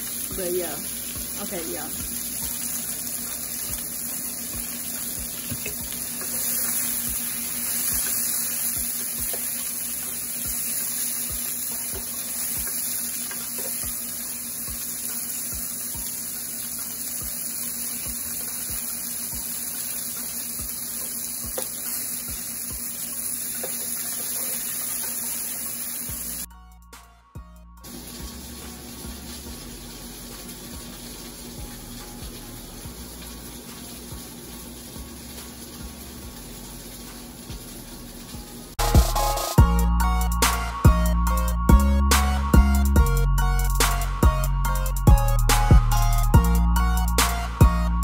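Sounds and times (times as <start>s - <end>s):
tap running into sink: 5.3s - 6.0s.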